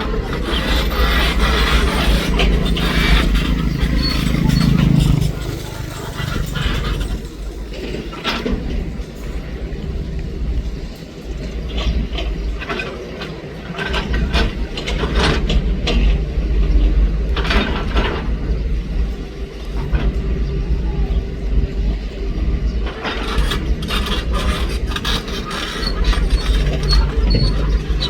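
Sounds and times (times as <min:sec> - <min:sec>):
metal clanks and scrapes: 0:00.0 - 0:09.6, 0:22.9 - 0:28.0
excavator diesel engine running: 0:00.0 - 0:28.0.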